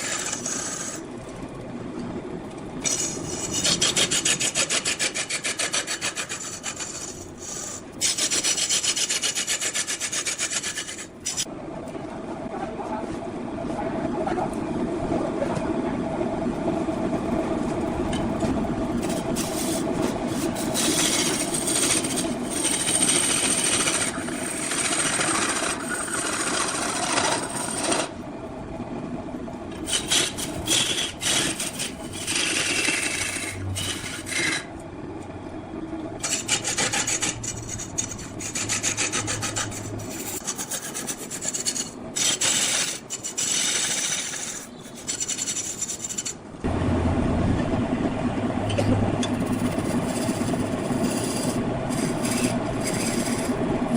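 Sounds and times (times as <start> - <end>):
tool scraping wood on lathe: 0.0 - 1.1, 2.8 - 11.5, 19.0 - 28.2, 29.8 - 34.7, 36.2 - 46.4, 49.2 - 53.9
lathe machine hum: 13.2 - 53.9.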